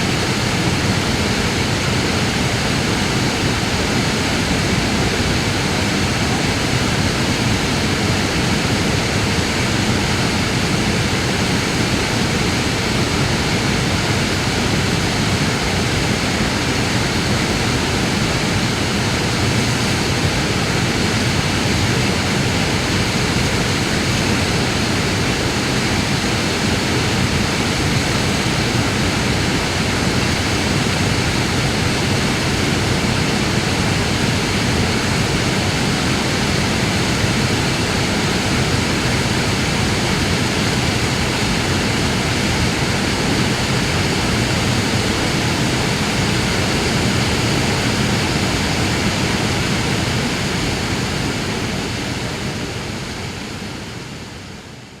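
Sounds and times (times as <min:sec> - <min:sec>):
waterfall rushing: 0:00.0 - 0:54.2.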